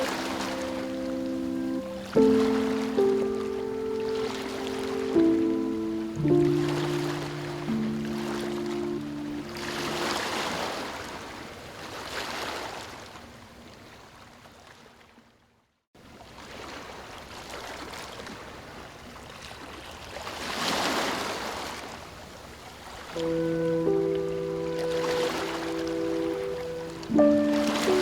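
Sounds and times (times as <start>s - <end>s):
ocean waves washing in: 0.0s - 13.1s, 22.8s - 28.0s.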